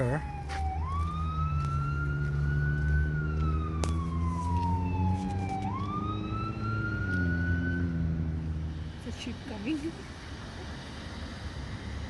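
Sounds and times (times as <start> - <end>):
emergency siren wailing: 0.0 - 8.7
low engine hum: 0.0 - 12.0.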